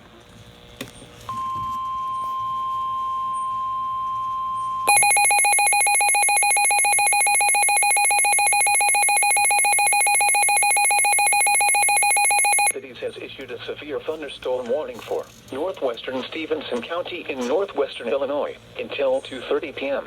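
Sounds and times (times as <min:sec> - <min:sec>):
steady warning tone: 0:01.3 - 0:12.8
pulsing electronic beeping alarm: 0:01.4 - 0:12.7.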